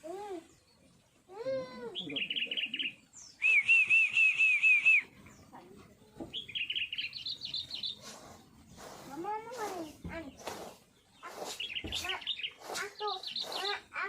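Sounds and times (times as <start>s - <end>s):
bulbuls chirping: 0.0s - 14.0s
rising and falling bird call: 1.6s - 5.2s, 10.4s - 13.8s.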